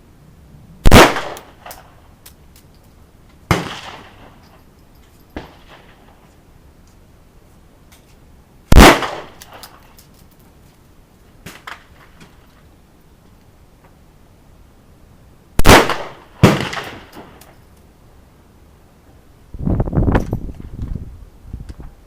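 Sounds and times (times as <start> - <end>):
handgun shots with echo: 0.9 - 1.8, 8.8 - 9.7, 15.6 - 17.4.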